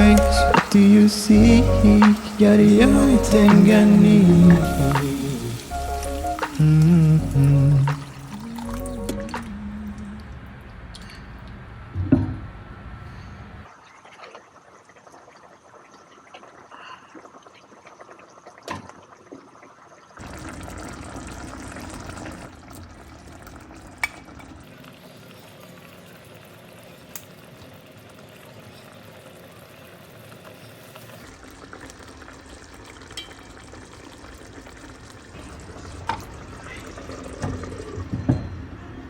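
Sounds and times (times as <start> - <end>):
liquid pouring: 0.0 - 9.6, 20.2 - 38.8.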